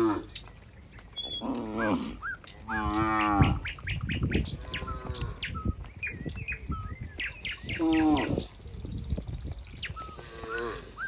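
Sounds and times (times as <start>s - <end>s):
small birds chirping: 0.0s - 11.0s
cow mooing: 1.4s - 3.6s, 7.8s - 8.5s.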